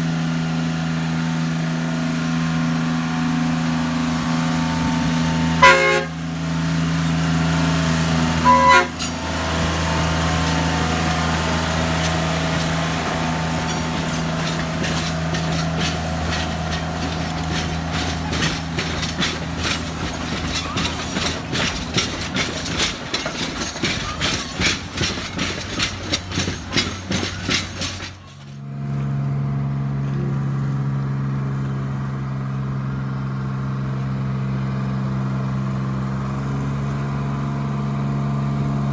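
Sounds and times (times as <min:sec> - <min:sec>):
wheels clattering over track: 0:00.0 - 0:32.7
locomotive engine running: 0:00.0 - 0:38.9
horn toots: 0:04.8 - 0:06.4, 0:08.4 - 0:10.0.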